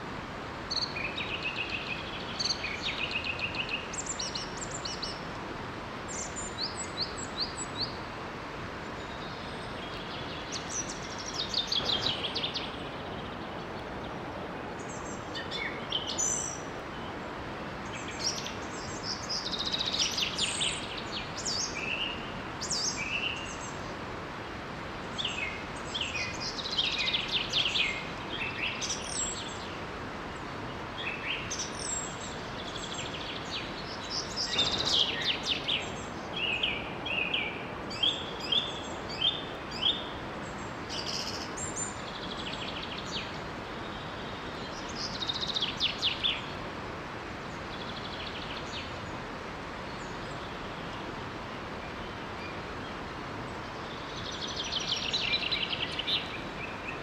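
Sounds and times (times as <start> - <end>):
songbirds chirping: 0.0 - 57.0
waterfall rushing: 10.3 - 41.0.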